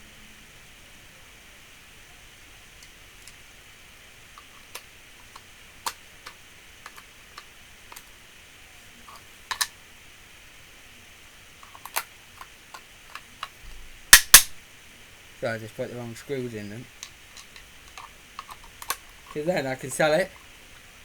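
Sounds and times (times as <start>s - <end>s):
faint hiss: 0.0s - 21.0s
clicks and taps of plastic casing: 9.5s - 9.7s.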